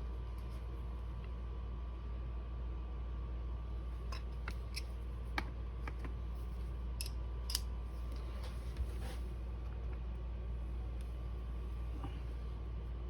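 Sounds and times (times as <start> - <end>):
steady low hum: 0.0 - 13.0
metallic clicks of gun parts: 7.0 - 7.7.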